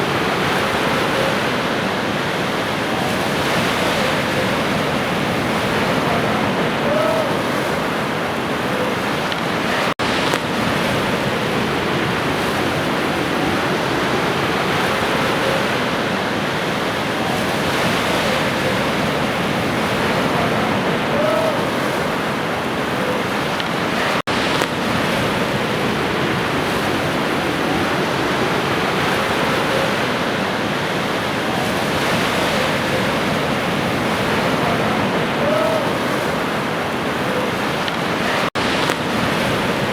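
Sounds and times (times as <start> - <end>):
ocean surf washing on shore: 0.0 - 39.9.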